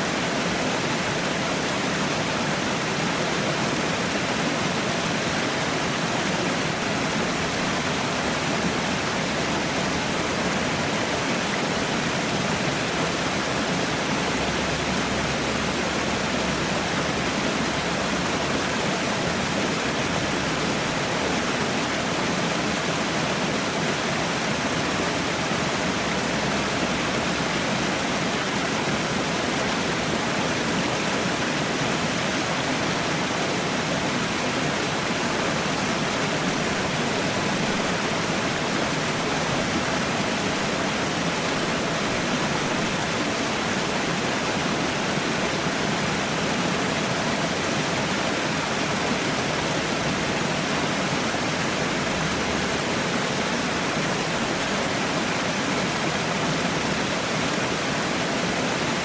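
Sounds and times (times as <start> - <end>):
falling water rushing: 0.0 - 59.0.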